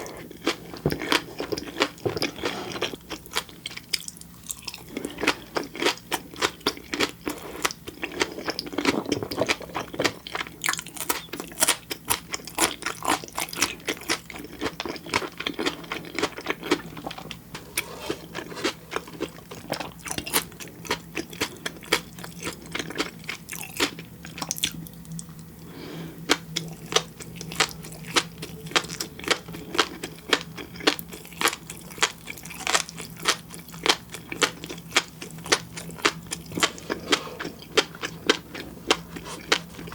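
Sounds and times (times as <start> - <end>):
chewing crunchy food: 0.0 - 39.9.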